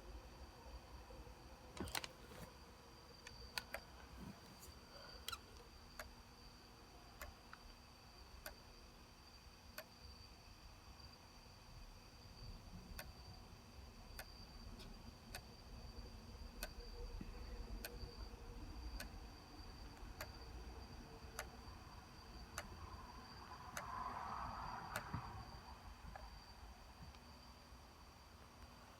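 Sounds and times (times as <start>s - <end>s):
cd player clicking: 1.8s - 2.5s.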